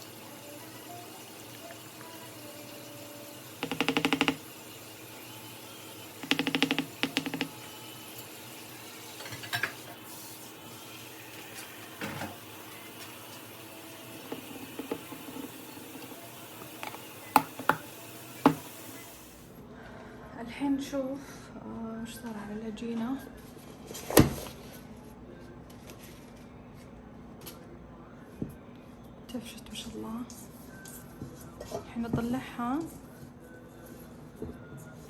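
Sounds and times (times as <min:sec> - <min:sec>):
electric hand mixer humming: 0:00.0 - 0:09.0, 0:10.0 - 0:19.4
utensils clicking and knocking: 0:03.6 - 0:04.4, 0:06.2 - 0:07.6, 0:14.2 - 0:16.1.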